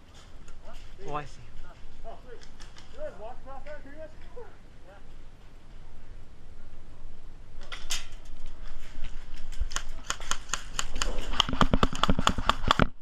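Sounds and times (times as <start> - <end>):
airsoft guns firing: 9.7 - 12.8.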